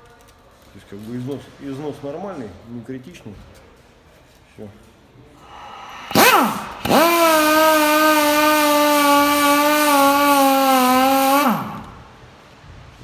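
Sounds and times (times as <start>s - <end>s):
power tool motor whining: 5.5s - 12.0s.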